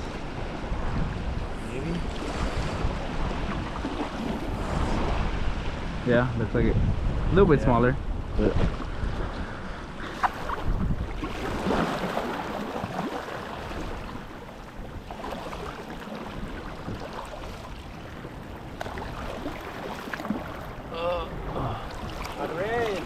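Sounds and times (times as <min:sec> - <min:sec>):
wind noise on microphone: 0:00.0 - 0:22.3
seawater washing against rocks: 0:10.0 - 0:23.0.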